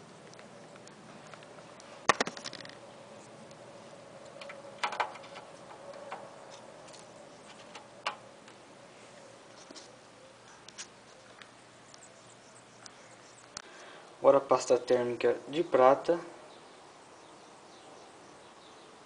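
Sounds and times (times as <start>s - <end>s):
small parts clicking and knocking: 2.1s - 2.8s, 4.2s - 8.2s.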